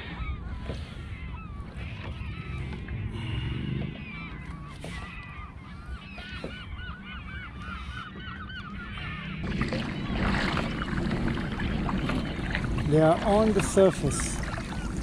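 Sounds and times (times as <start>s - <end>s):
seabirds calling: 0.0s - 15.0s
steady low rumble: 9.4s - 15.0s.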